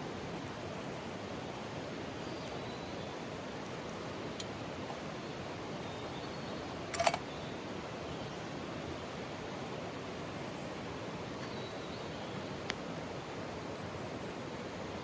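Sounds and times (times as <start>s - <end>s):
mountain stream rushing: 0.0s - 5.8s
clicks: 6.9s - 7.2s.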